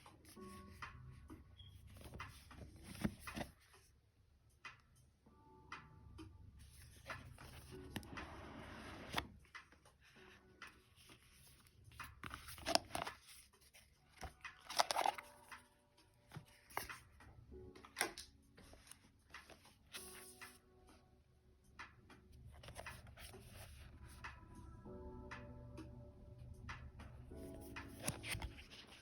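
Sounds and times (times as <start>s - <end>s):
cards and box clicking: 1.9s - 3.6s, 10.6s - 20.4s, 22.5s - 23.8s, 27.8s - 29.0s
packaging rustling: 12.2s - 15.5s.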